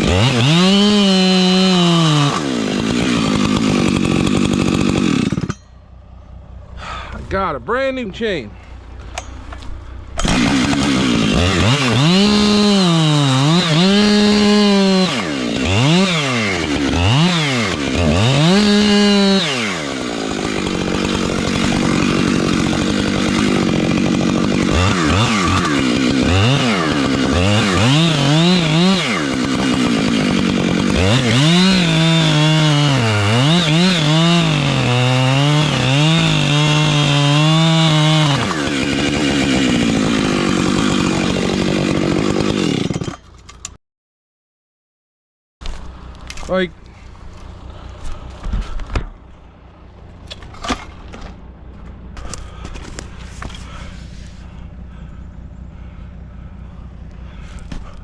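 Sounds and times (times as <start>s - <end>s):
chainsaw revving: 0.0s - 5.6s, 10.2s - 43.2s, 52.2s - 58.0s.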